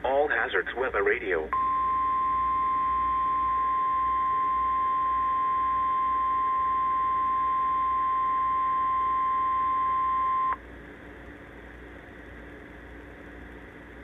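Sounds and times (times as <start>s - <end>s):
steady alarm tone: 1.5s - 10.6s.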